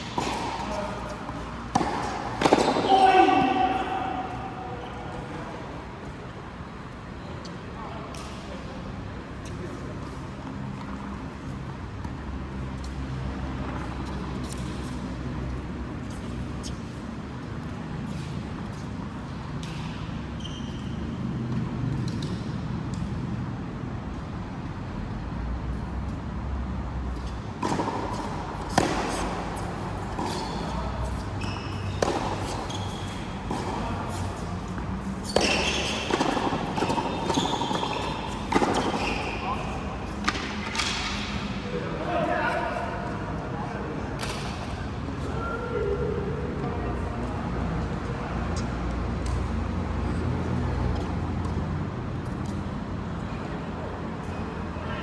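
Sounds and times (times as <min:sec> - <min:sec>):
racket ball strikes: 0:00.0 - 0:05.2, 0:27.6 - 0:41.5
shoes squeaking on court: 0:00.0 - 0:08.6, 0:09.3 - 0:23.1, 0:27.1 - 0:41.6.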